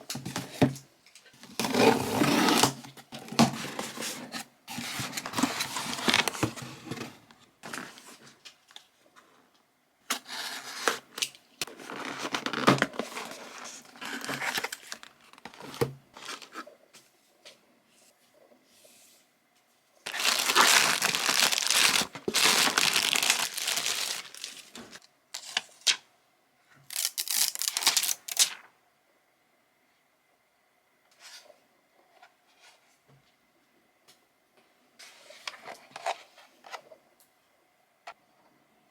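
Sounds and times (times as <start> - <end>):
packaging crinkling and tearing: 20.1 - 25.6, 26.9 - 28.6.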